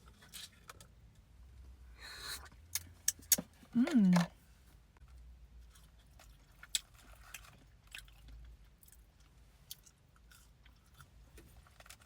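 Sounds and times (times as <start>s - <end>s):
chewing and biting food: 5.7s - 12.0s.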